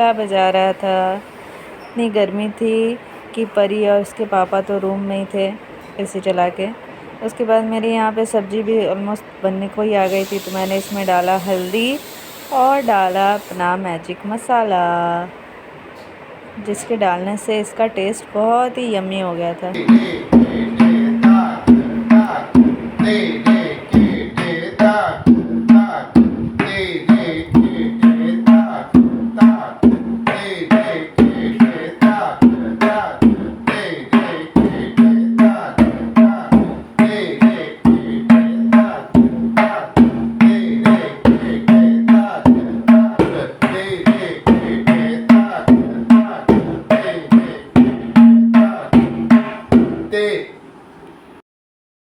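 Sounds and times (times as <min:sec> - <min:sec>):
tabla playing a steady rhythm: 0:10.0 - 0:13.6, 0:19.8 - 0:50.1.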